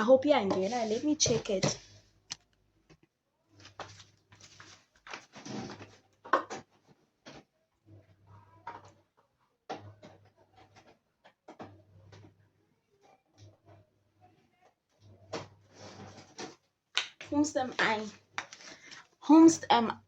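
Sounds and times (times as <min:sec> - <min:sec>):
plastic packaging crinkling: 0:03.6 - 0:06.0.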